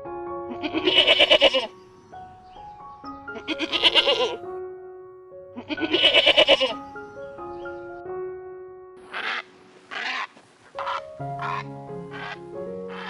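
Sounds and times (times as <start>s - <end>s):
soft piano music: 0.0s - 13.0s
quavering animal bleats: 0.5s - 1.7s, 3.4s - 4.4s, 5.6s - 6.8s, 9.1s - 13.0s.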